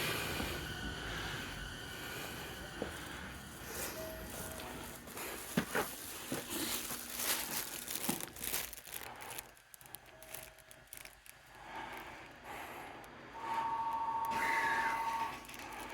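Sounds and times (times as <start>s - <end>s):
electric train slowing: 0.0s - 7.5s, 12.5s - 15.9s.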